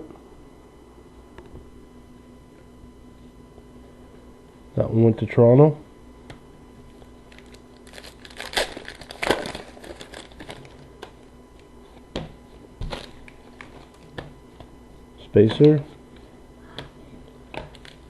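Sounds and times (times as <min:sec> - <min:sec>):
plastic wrapper crinkling and tearing: 0:06.9 - 0:10.9, 0:17.7 - 0:18.0.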